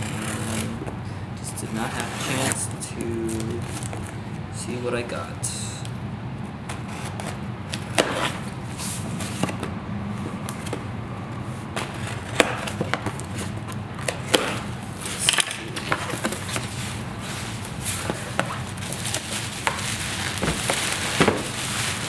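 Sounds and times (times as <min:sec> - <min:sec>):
package being unpacked by hand: 0:11.7 - 0:22.0.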